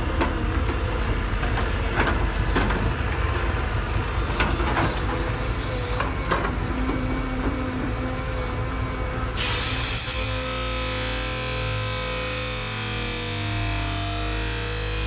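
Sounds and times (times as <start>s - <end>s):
construction machinery engine rumble: 0.0s - 9.9s.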